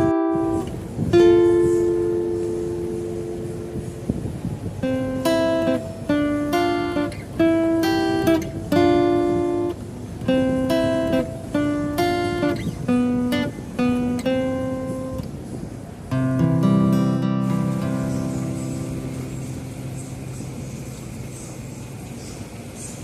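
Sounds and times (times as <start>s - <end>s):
acoustic guitar plucking melody: 0.0s - 23.0s.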